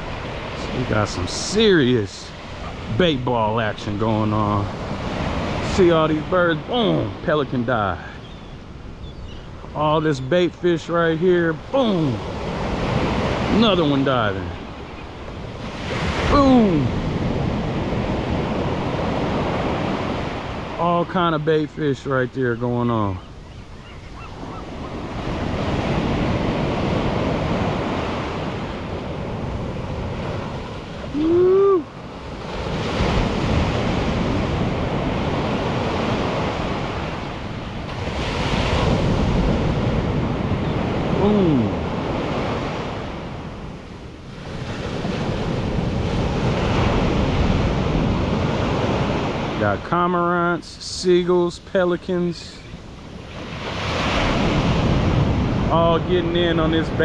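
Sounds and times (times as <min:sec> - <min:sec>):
ocean surf washing in: 0:00.0 - 0:57.0
wind buffeting microphone: 0:23.2 - 0:49.8, 0:54.2 - 0:57.0.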